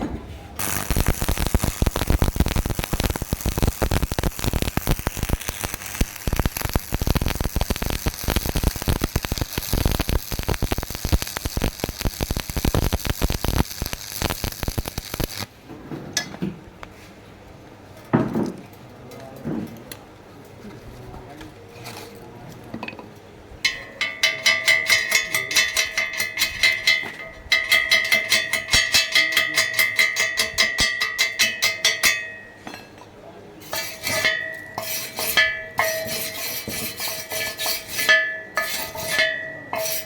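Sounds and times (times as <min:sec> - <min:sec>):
welding arc crackling: 0:00.6 - 0:15.5.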